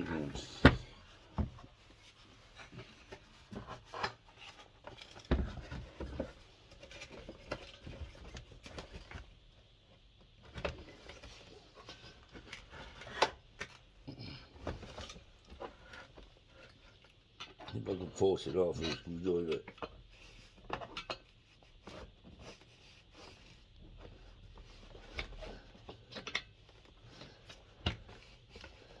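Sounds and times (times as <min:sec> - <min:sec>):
knocks and rubbing of dismantled parts: 0:00.2 - 0:09.3
heavy thump: 0:00.6 - 0:00.9.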